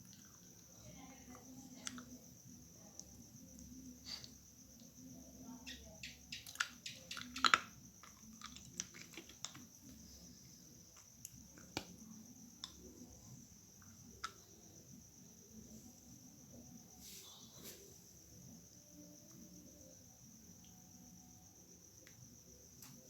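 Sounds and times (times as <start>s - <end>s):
soft rustles: 17.0s - 18.1s.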